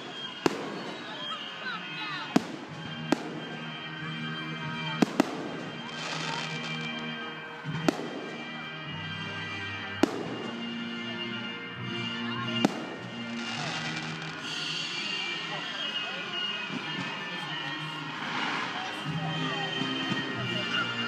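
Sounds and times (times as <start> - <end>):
fireworks bursting in bangs: 0.0 - 1.4, 2.2 - 3.7, 5.0 - 7.0, 7.7 - 8.4, 10.0 - 10.6, 12.6 - 15.9, 18.0 - 19.1
music with held notes: 0.0 - 21.0.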